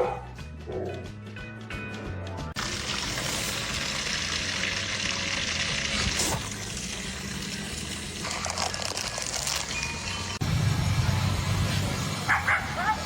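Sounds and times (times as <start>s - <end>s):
running water hiss: 2.6s - 13.0s.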